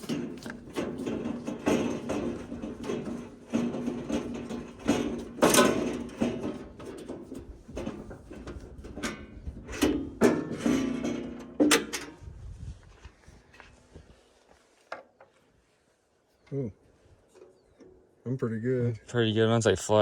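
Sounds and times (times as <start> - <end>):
clunks and rattles on saw head: 0.0 - 12.3.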